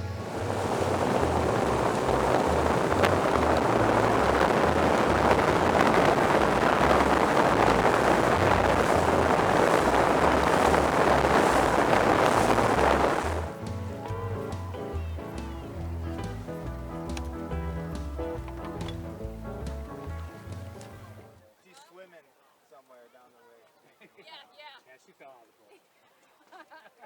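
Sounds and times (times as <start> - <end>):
rushing wind and water: 0.0 - 15.0
wind buffeting microphone: 0.0 - 21.1
background music with bass: 0.0 - 21.4.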